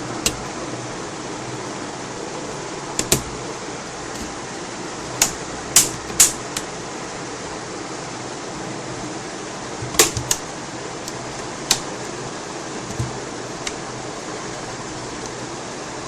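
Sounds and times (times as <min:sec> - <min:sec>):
plastic clips clicking loose: 0:03.0 - 0:03.3, 0:05.2 - 0:06.7, 0:09.9 - 0:10.4.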